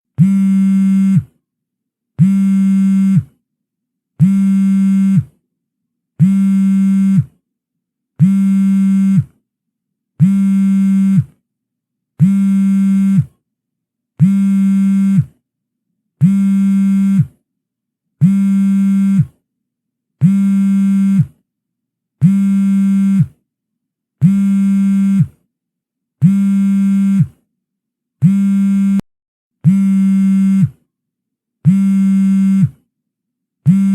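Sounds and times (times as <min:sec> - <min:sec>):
phone vibration buzz: 0:00.2 - 0:01.2, 0:02.2 - 0:03.3, 0:04.2 - 0:05.3, 0:06.2 - 0:07.3, 0:08.2 - 0:09.3, 0:10.2 - 0:11.3, 0:12.2 - 0:13.3, 0:14.2 - 0:15.3, 0:16.2 - 0:17.3, 0:18.2 - 0:19.3, 0:20.2 - 0:21.3, 0:22.2 - 0:23.3, 0:24.2 - 0:25.3, 0:26.2 - 0:27.4, 0:28.2 - 0:29.0, 0:29.6 - 0:30.8, 0:31.7 - 0:32.8, 0:33.7 - 0:33.9.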